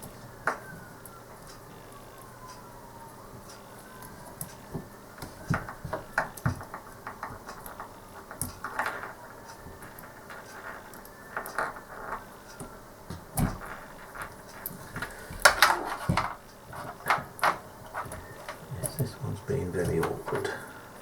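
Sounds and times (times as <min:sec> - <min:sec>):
small clicks and taps: 0:00.0 - 0:19.0
hands rustling: 0:09.7 - 0:21.0.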